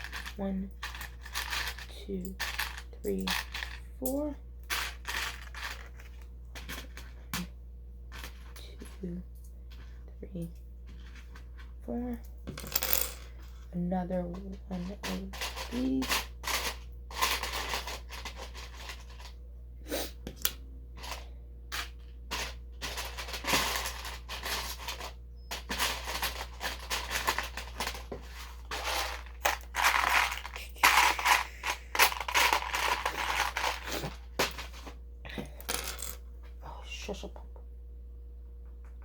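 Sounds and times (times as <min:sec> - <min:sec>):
plastic bricks clicking and rattling: 0:22.8 - 0:34.7.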